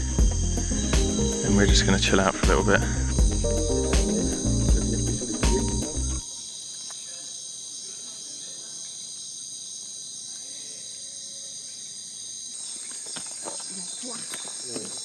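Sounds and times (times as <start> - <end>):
background music: 0.0 - 6.3
rainforest insects chorus: 0.0 - 15.0.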